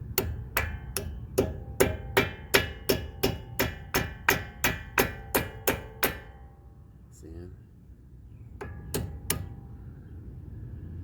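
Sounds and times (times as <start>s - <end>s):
hammer tapping metal pin: 0.1s - 6.3s.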